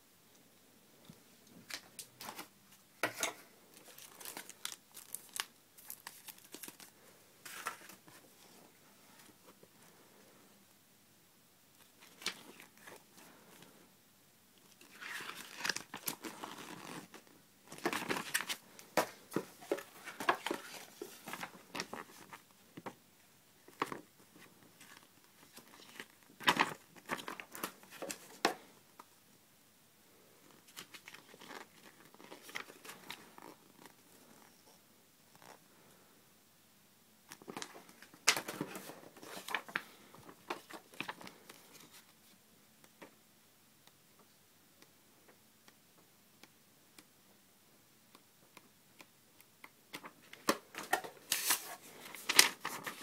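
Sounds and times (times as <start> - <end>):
plastic wrapping crinkling: 3.1 - 8.0, 50.2 - 53.0.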